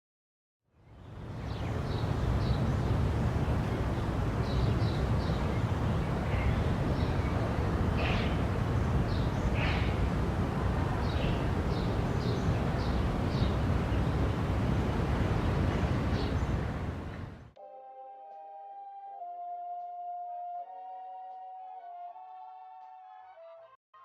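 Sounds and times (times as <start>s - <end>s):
birds chirping: 0.8s - 17.6s
wind rumble on microphone: 0.9s - 17.5s.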